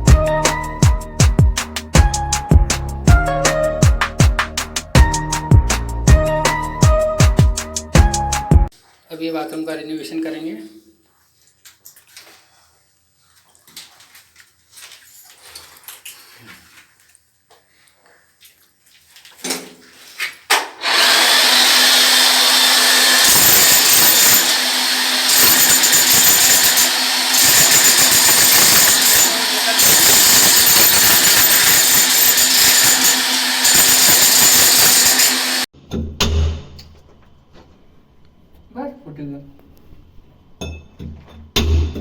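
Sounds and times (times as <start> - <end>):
handheld power tool running: 20.8 - 35.7.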